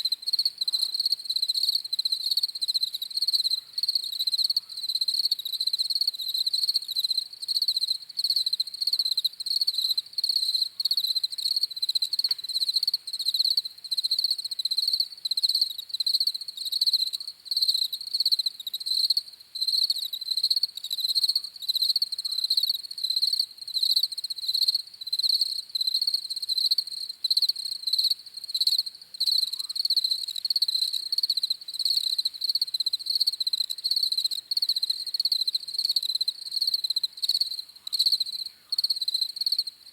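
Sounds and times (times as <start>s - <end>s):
crickets chirping: 0.0s - 39.9s.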